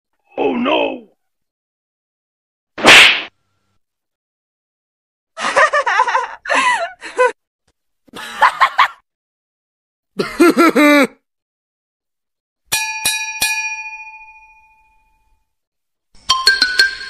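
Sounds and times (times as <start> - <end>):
bell ringing: 16.3 - 17.0.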